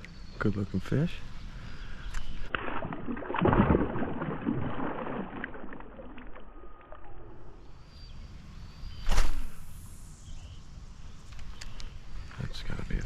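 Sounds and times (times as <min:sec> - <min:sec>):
water sloshing and splashing: 0:02.3 - 0:07.6.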